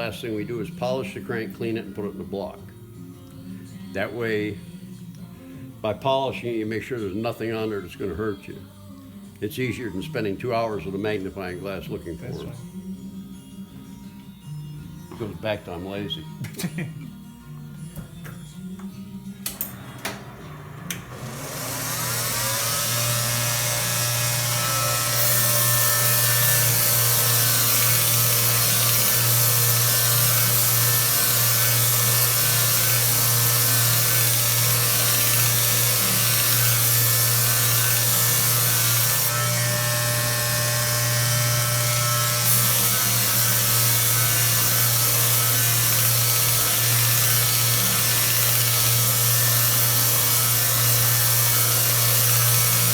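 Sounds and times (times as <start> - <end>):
polishing machine humming: 19.8 - 25.6.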